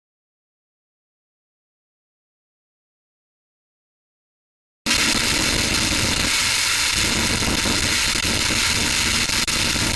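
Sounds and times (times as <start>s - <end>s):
harsh static hiss: 4.9s - 9.9s.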